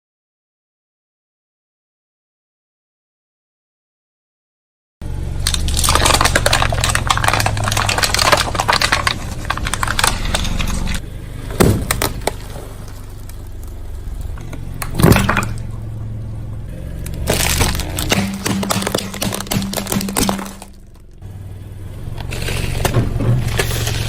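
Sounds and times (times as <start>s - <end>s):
hard candy crunching under tyre: 5.0s - 21.4s, 22.0s - 24.0s
car engine hum: 5.0s - 24.0s
thumps: 17.2s - 21.2s.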